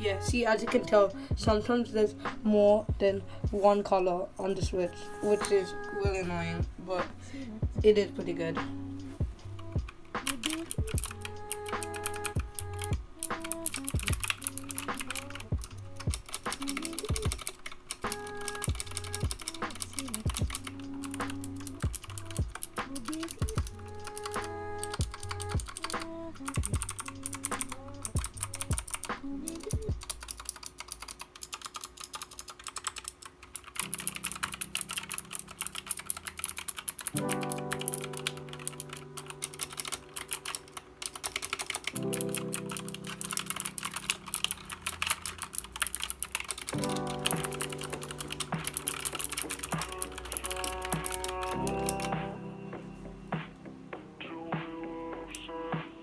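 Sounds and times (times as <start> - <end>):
fast mechanical keyboard typing: 9.8 - 52.1.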